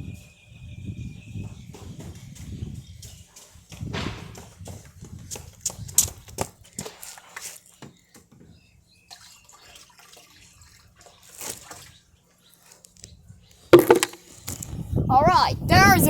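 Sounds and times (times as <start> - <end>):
water splashing and dripping: 6.0 - 8.1, 9.0 - 12.9.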